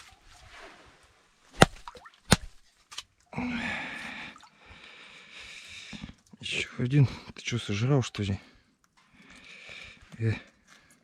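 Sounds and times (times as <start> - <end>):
fish slapping on ice: 1.5 - 2.6.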